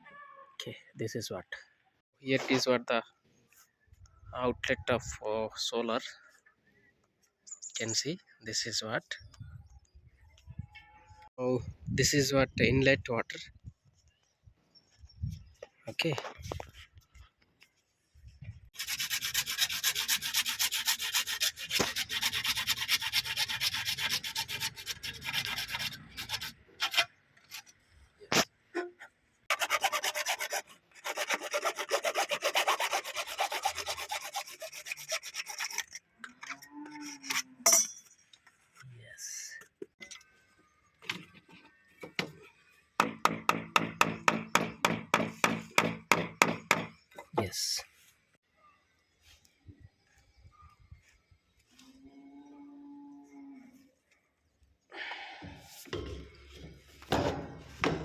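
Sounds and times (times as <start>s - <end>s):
rapid hammering: 43.0s - 46.9s.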